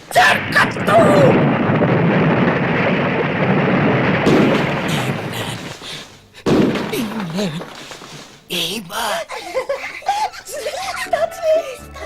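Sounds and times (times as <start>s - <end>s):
loud rumbling: 0.0s - 8.0s.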